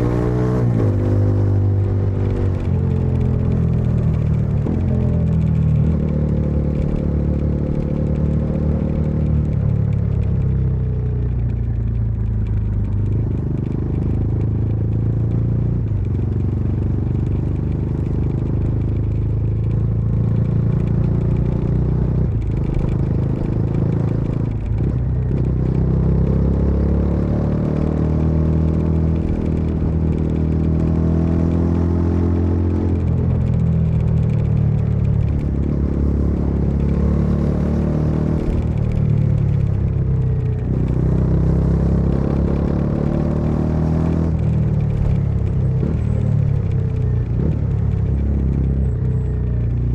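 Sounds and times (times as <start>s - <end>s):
motorcycle engine and exhaust: 0.0s - 49.9s.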